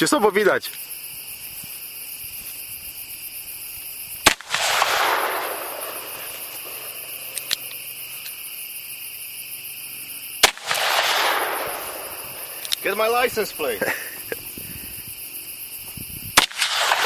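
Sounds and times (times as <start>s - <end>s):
revolver gunshot with echo: 4.2s - 6.9s, 10.4s - 12.6s, 16.4s - 17.0s.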